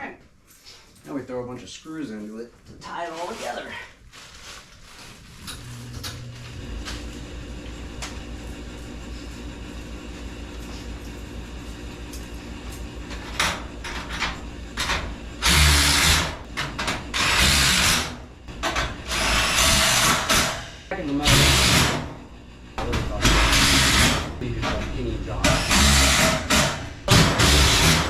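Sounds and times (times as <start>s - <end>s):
power drill driving screws: 15.4s - 16.4s, 17.1s - 18.2s, 19.1s - 20.5s, 23.3s - 24.2s, 25.6s - 28.0s.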